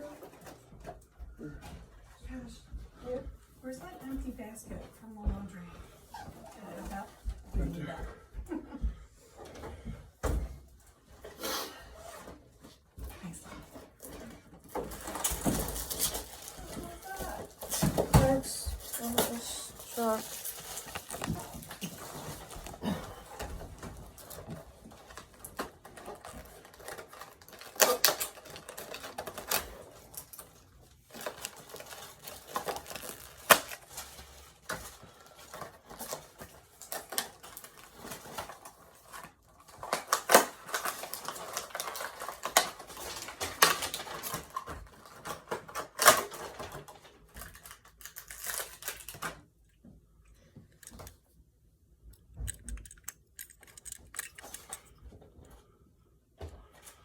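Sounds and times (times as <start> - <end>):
plastic toys clicking and tapping: 52.2 - 55.0.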